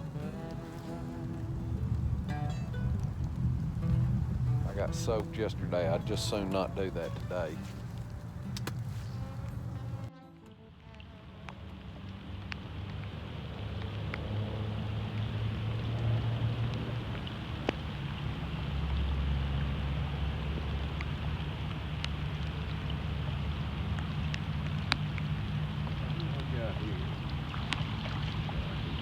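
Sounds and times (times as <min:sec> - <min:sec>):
raindrops ticking: 0:00.0 - 0:10.1, 0:11.5 - 0:29.0
steady low rumble: 0:00.0 - 0:10.1
light rain sprinkling: 0:00.0 - 0:29.0.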